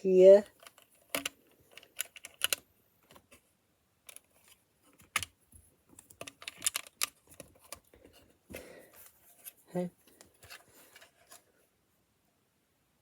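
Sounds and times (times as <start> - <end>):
plastic bricks clicking together: 0.4 - 3.2, 6.0 - 7.8.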